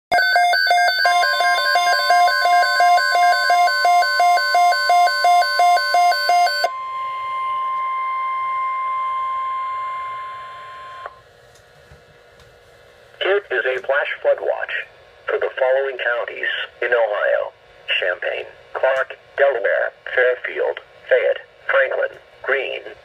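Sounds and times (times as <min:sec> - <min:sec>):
steady high alert tone: 0:00.1 - 0:11.1
two-tone electronic alarm beeping: 0:00.1 - 0:11.2.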